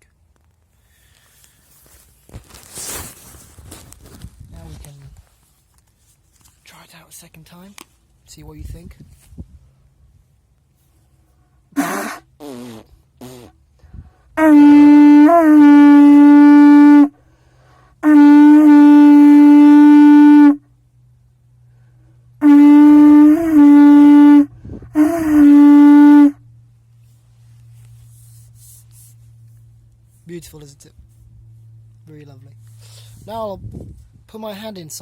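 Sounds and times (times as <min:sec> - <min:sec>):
animal horn blasts: 0:11.7 - 0:13.6, 0:14.3 - 0:20.7, 0:22.4 - 0:26.4
horn short toots: 0:11.7 - 0:13.6, 0:14.3 - 0:17.2, 0:18.0 - 0:20.6, 0:22.4 - 0:26.4.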